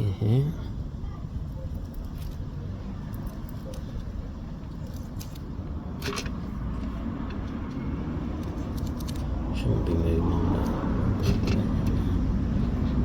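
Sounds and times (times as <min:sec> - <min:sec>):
metal tools clicking and knocking: 0:07.2 - 0:09.4.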